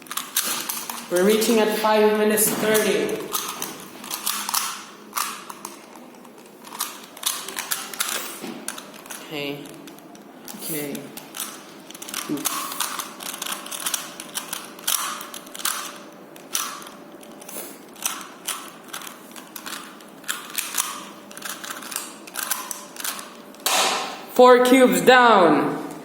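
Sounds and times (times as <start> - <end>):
puzzle cube plastic clicks: 2.8 - 23.6.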